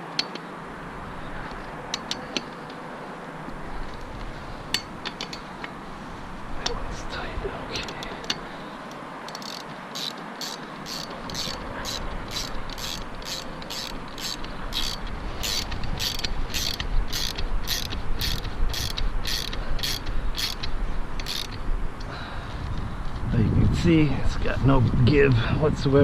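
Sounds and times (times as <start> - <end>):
ratchet wrench clicking: 7.8 - 21.6.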